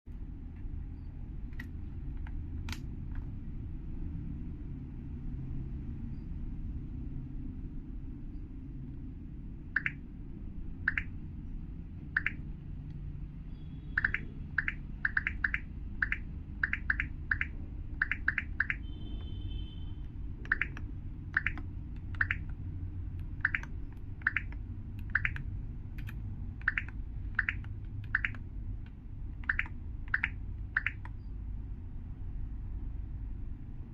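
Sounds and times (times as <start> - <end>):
mechanical keyboard clacks: 20.5 - 22.6, 23.2 - 28.4.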